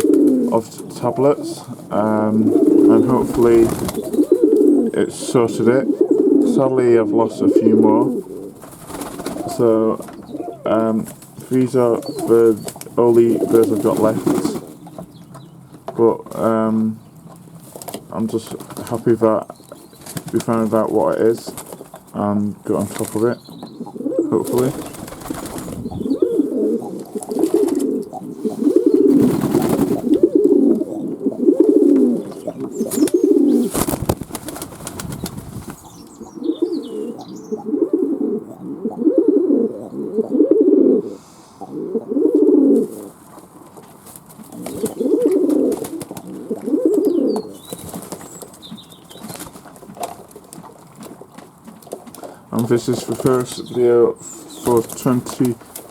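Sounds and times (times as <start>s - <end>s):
wings flapping: 0.0s - 1.5s, 2.4s - 4.9s, 8.1s - 15.1s, 17.6s - 19.0s, 19.7s - 22.1s, 22.7s - 23.4s, 24.2s - 30.5s, 31.8s - 36.1s, 42.8s - 53.8s, 54.4s - 55.9s
pigeons cooing: 0.0s - 55.9s.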